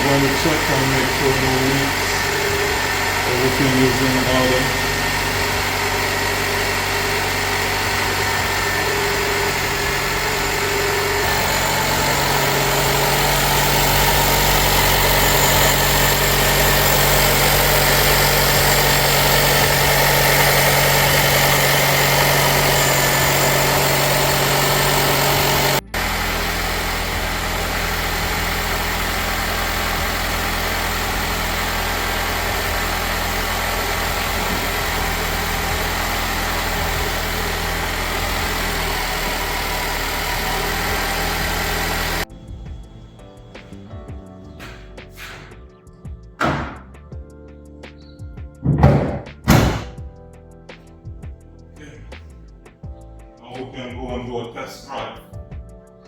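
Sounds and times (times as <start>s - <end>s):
car engine idling: 0.0s - 47.3s, 48.1s - 55.2s.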